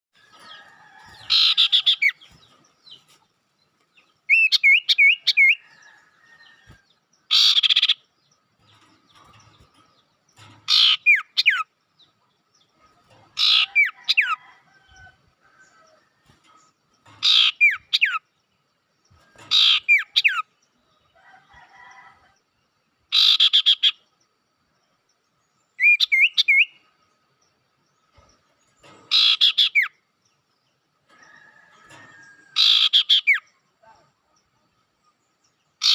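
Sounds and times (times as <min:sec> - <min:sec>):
birds calling harshly: 0:00.2 - 0:03.1, 0:04.3 - 0:09.8, 0:10.4 - 0:11.8, 0:13.0 - 0:18.4, 0:19.1 - 0:20.6, 0:23.1 - 0:24.0, 0:28.1 - 0:30.1, 0:31.1 - 0:34.5, 0:35.6 - 0:35.9.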